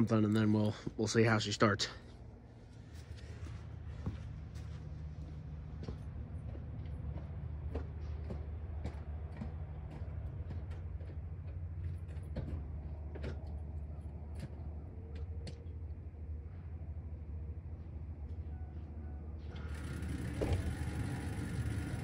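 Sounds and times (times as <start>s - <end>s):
diesel truck engine idling: 19.3s - 22.0s.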